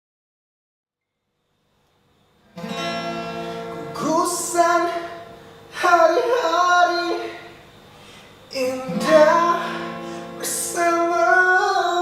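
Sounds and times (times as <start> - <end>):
acoustic guitar strumming: 2.4 - 12.0
person singing: 3.8 - 7.5, 8.5 - 12.0.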